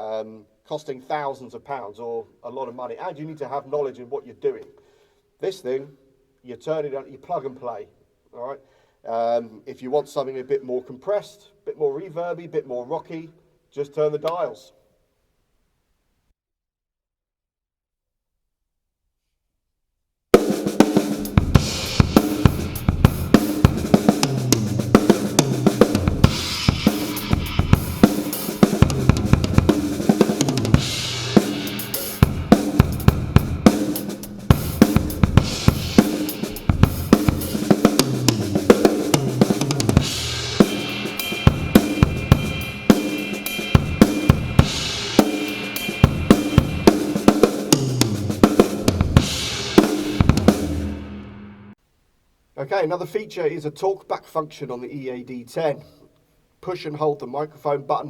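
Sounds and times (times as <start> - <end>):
drum kit rock groove: 20.4 - 51.6
bass line: 21.2 - 51.7.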